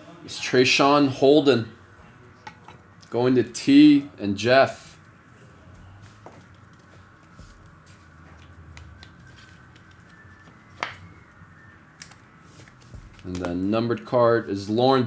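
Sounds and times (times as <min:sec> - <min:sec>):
trading cards handled: 0:05.8 - 0:14.1.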